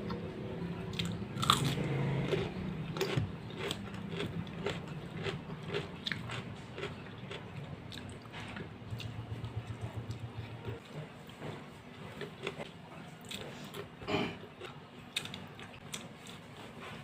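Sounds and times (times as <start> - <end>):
person biting and chewing: 1.0 - 9.2.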